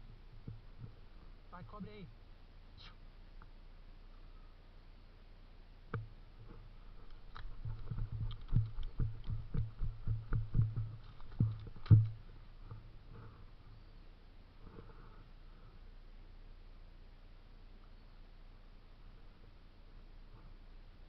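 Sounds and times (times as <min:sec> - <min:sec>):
footsteps with dull thumps: 0:06.0 - 0:13.5.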